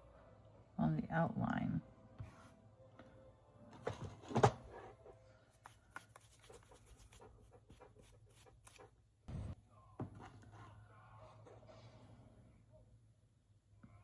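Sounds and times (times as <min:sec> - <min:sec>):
soft rubbing on nails: 0:04.9 - 0:09.0.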